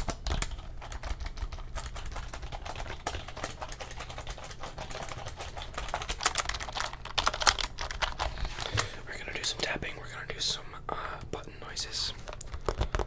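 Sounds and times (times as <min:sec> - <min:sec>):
keyboard keys clicking: 0:00.0 - 0:08.2.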